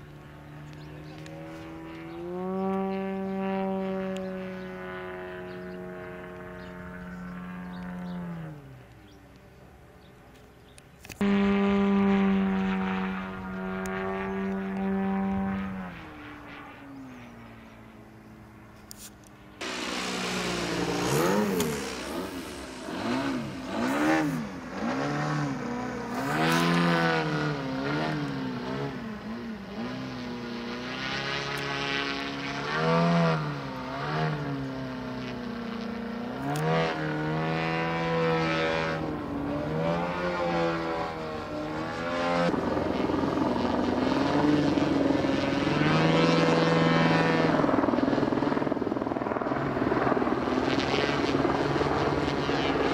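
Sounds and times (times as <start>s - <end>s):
model plane engine and propeller: 0.0s - 52.9s.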